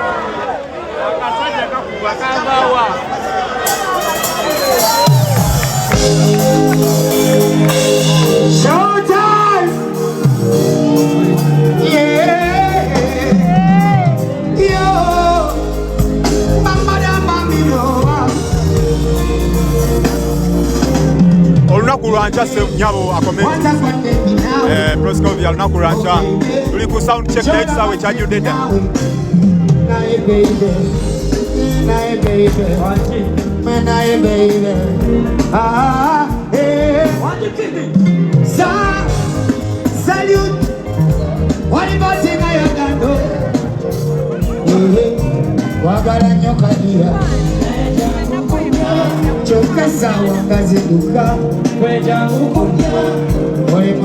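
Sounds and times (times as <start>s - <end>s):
amplified backing music: 4.4s - 54.0s
heavy bass line: 10.2s - 36.1s
man singing: 11.4s - 19.9s, 21.7s - 54.0s
sustained accompaniment: 14.2s - 34.0s.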